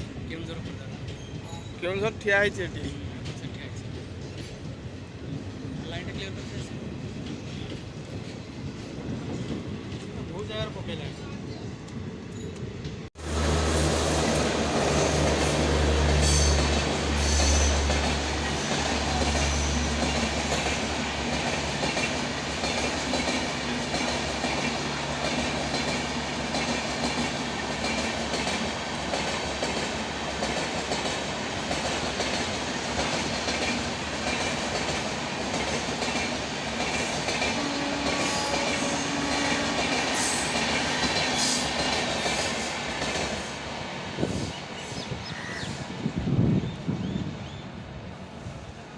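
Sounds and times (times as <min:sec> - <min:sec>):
train wheels clattering over rails: 0:12.4 - 0:45.0.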